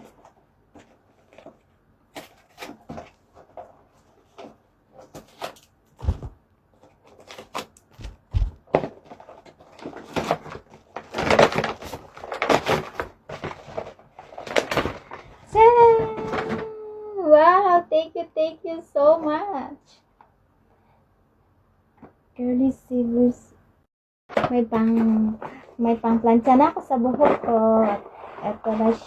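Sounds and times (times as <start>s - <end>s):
wrapping paper crackling and tearing: 6.8s - 15.4s
dull thumps: 7.9s - 8.9s.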